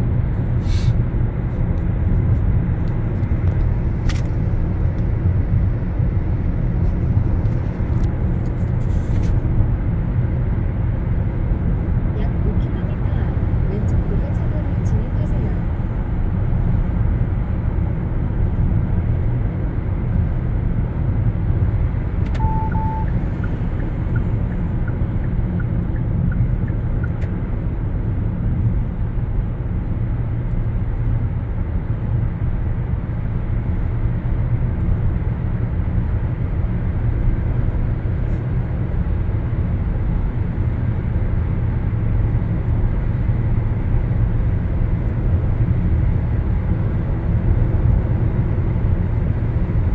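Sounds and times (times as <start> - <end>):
car cabin road rumble: 0.0 - 49.9
short double beep: 22.4 - 23.6.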